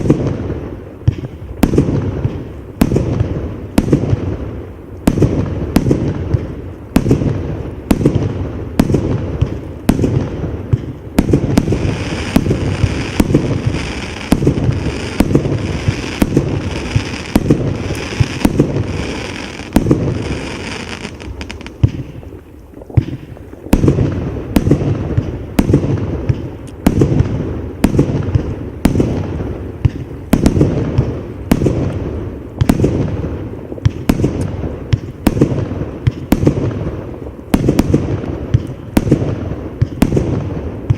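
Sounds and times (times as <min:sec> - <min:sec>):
firework crackle: 0:00.0 - 0:40.9.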